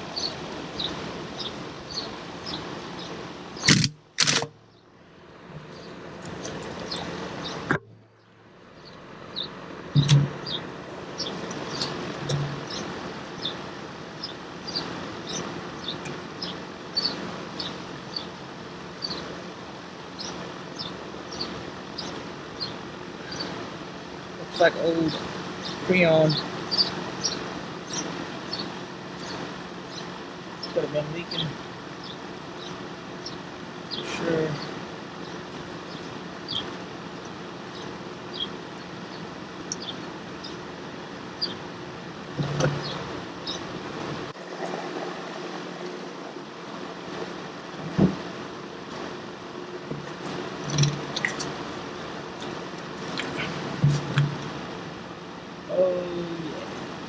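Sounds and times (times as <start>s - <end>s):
steady background noise: 0.0s - 57.0s
small bird chirping: 0.1s - 3.7s, 5.6s - 18.4s, 24.4s - 41.7s, 42.3s - 44.4s, 49.9s - 54.5s.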